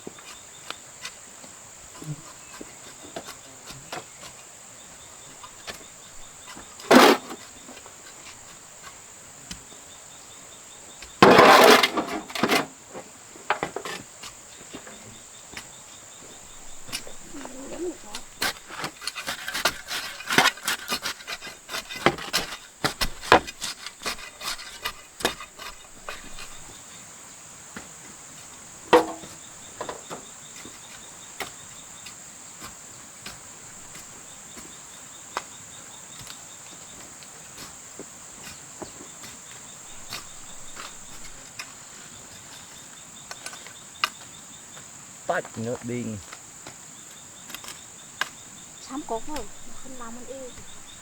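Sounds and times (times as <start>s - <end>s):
insects droning: 0.0s - 51.0s
wooden knocking and tapping: 28.9s - 30.3s
hollow ringing knock: 29.0s - 29.4s.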